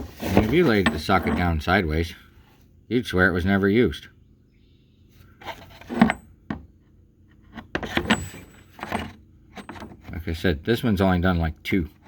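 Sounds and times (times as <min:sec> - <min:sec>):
metal sockets clattering: 0:07.5 - 0:10.0
metal sockets clinking: 0:07.8 - 0:10.0.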